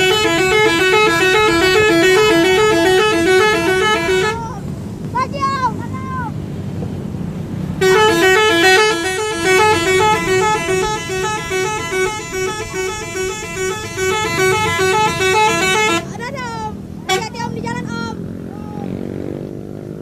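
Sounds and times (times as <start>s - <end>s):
musical bus horn: 0.0s - 4.6s, 7.8s - 17.6s
low engine rumble: 0.0s - 19.0s.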